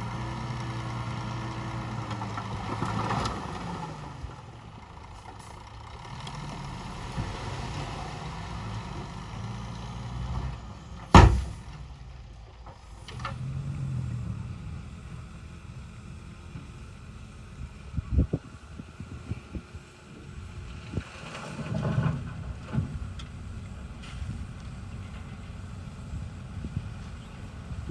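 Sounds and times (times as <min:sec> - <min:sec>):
heavy diesel machinery engines: 0:00.0 - 0:27.9
loud sharp bang: 0:11.1 - 0:11.7.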